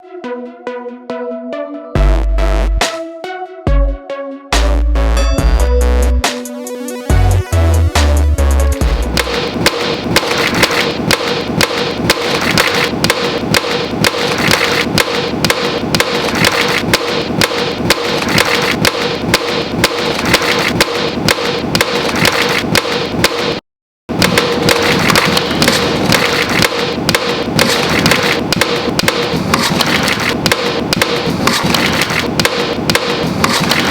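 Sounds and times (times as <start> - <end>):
playing card percussive beat: 4.6 - 33.9.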